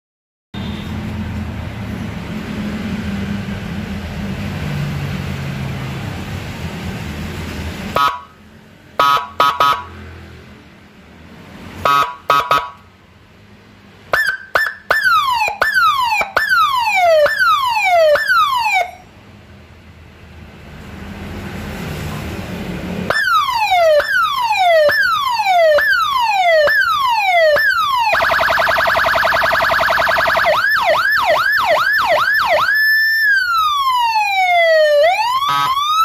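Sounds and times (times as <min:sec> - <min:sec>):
short honking blasts: 0:08.0 - 0:08.3, 0:09.0 - 0:10.0, 0:11.8 - 0:12.8
falling siren tone: 0:14.1 - 0:19.1, 0:23.1 - 0:36.0.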